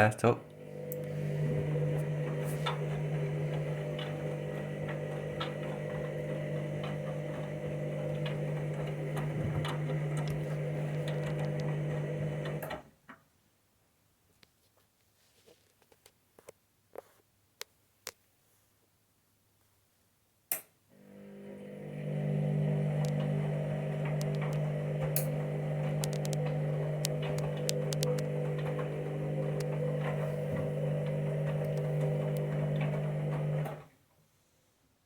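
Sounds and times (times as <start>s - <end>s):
washing machine motor hum: 0.0s - 12.8s, 21.0s - 33.9s
washing machine click: 23.0s - 33.8s.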